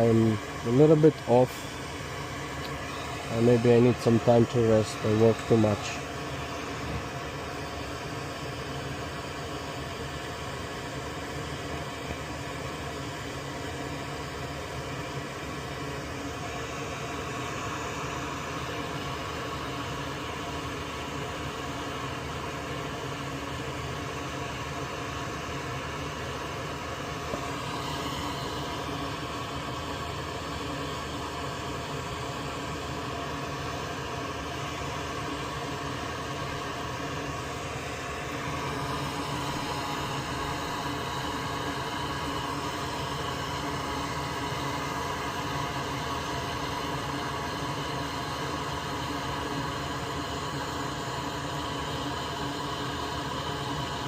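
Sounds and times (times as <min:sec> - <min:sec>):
noisy hiss: 0:00.0 - 0:10.3
small motor humming: 0:00.0 - 0:54.0.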